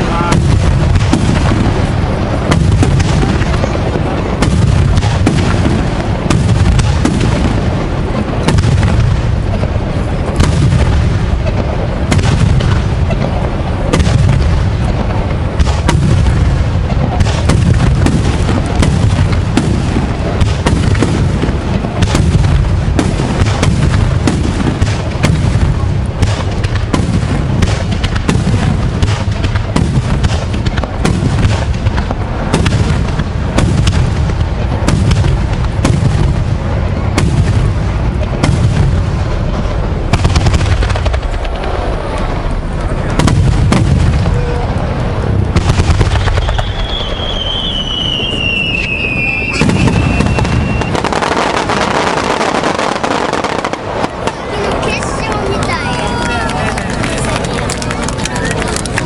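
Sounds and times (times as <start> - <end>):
fireworks bursting: 0.0 - 59.0.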